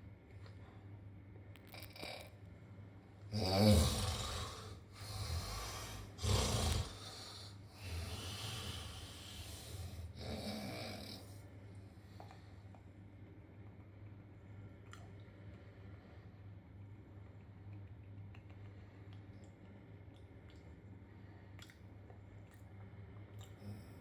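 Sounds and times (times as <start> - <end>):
person snoring: 3.3 - 11.4.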